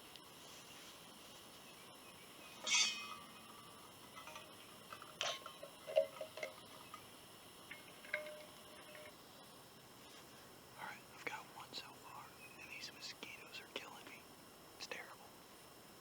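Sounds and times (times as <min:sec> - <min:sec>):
high bird call: 0:02.5 - 0:03.4.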